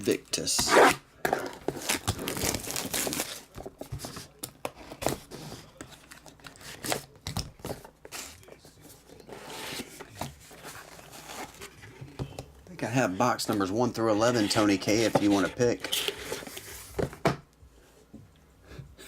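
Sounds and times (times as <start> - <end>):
packaging tearing and crinkling: 1.8 - 3.6.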